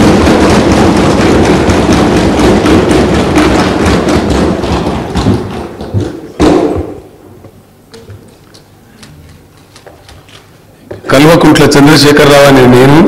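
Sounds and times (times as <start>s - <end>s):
loud bang: 0.0s - 7.2s
people thumping wooden desks: 0.0s - 11.1s.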